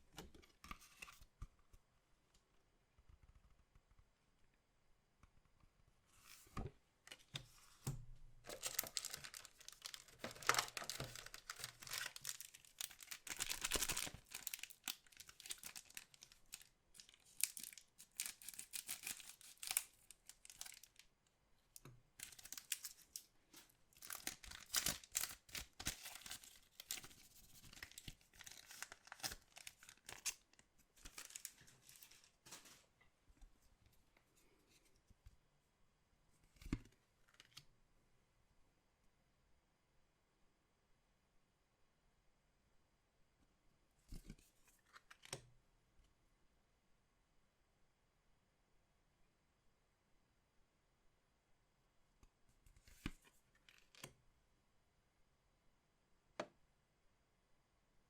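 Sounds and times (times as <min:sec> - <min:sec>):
wrappers tearing and crinkling: 0:08.5 - 0:21.0, 0:24.0 - 0:30.4, 0:31.1 - 0:32.7.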